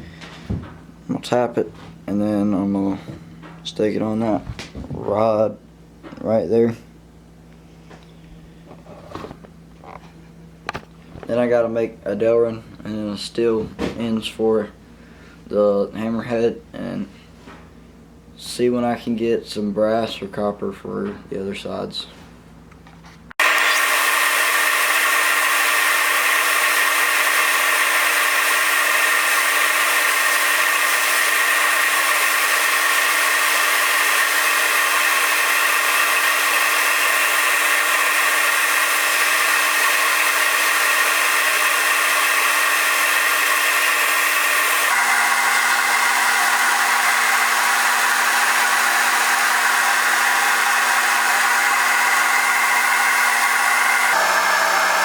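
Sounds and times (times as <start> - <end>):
lathe cutting hiss: 23.4 - 55.0
metal lathe motor hum: 23.4 - 55.0.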